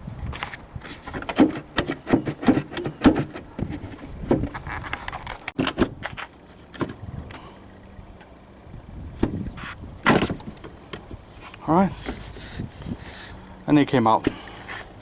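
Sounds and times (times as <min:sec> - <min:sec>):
plastic clicks and scrapes: 0:00.3 - 0:07.0.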